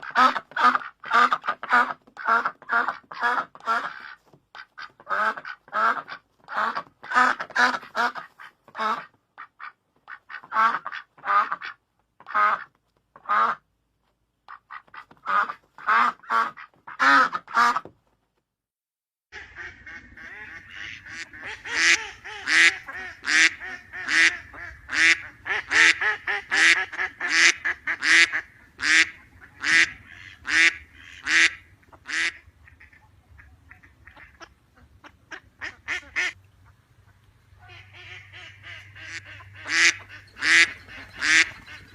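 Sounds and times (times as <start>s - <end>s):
ducks quacking: 0.0s - 13.6s, 14.5s - 17.9s, 19.4s - 41.9s
low steady background noise: 19.4s - 41.9s.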